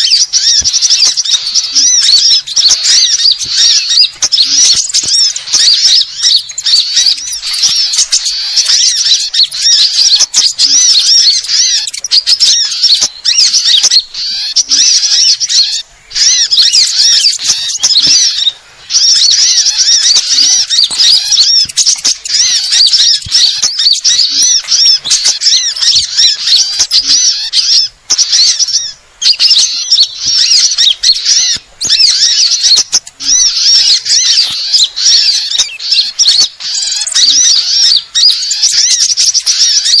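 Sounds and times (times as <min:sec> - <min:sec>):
songbirds chirping and trilling: 0:00.0 - 0:40.0.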